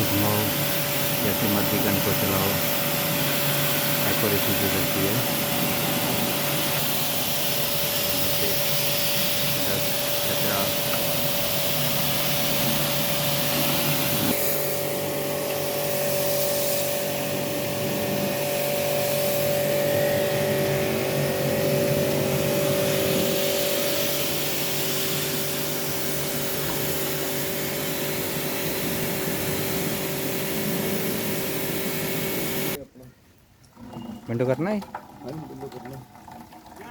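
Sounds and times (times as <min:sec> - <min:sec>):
pressure washer motor hum: 0:00.0 - 0:32.8
water spray hissing: 0:00.0 - 0:32.8.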